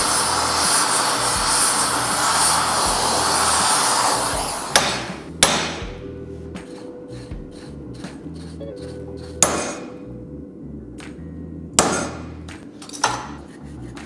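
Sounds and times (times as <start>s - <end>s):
hammer strikes on metal: 0.0s - 8.5s, 9.2s - 10.0s, 11.8s - 13.4s
background music: 0.0s - 14.0s.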